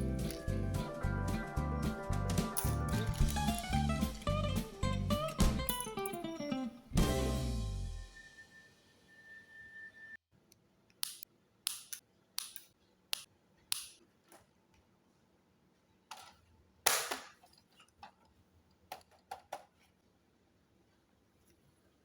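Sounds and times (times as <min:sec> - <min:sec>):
plastic clicks and snaps: 0:10.5 - 0:14.4.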